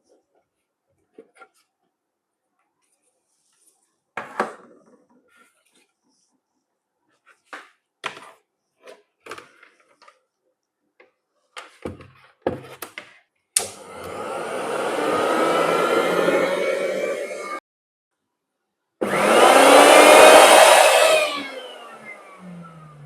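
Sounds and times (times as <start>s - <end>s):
mixer grinder motor whining: 13.6s - 17.6s, 19.0s - 23.0s.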